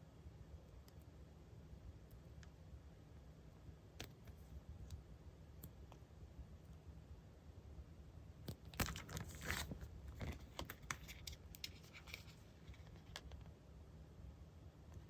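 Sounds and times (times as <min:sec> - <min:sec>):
paper rustling: 0:08.8 - 0:13.3.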